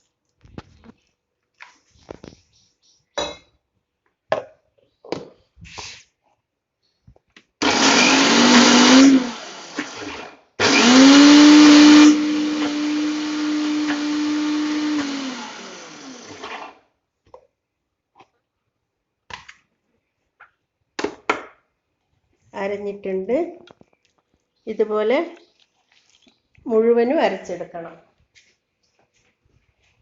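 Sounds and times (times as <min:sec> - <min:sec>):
mixer grinder grinding: 0:07.6 - 0:16.8.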